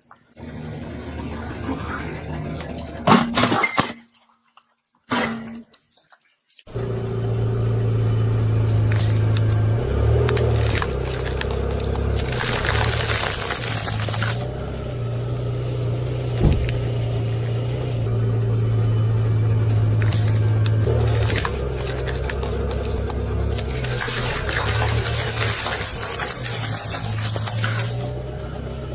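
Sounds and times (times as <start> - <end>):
car engine running slowly: 6.7 - 28.9
crackles and clicks: 8.5 - 14.6, 19.6 - 28.3
wheel rolling over objects: 8.6 - 14.6, 19.6 - 28.3
thud: 16.4 - 16.9.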